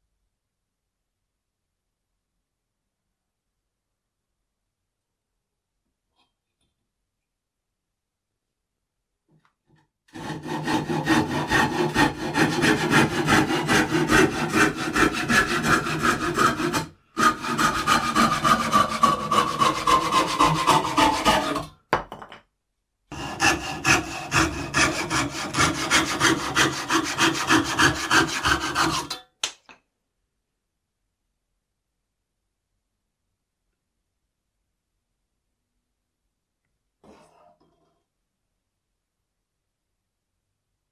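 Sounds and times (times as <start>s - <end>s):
hand saw cutting wood: 10.1s - 21.8s, 23.1s - 29.2s.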